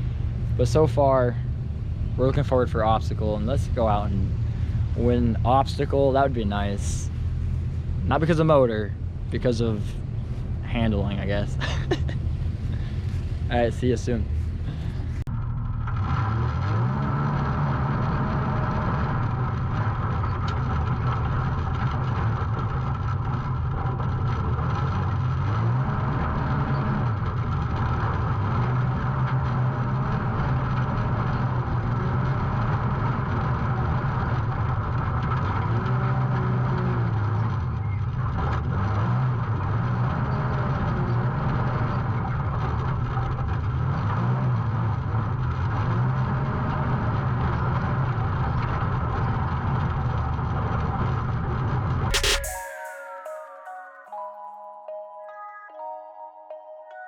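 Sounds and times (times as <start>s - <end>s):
engine revving: 12.5s - 21.2s.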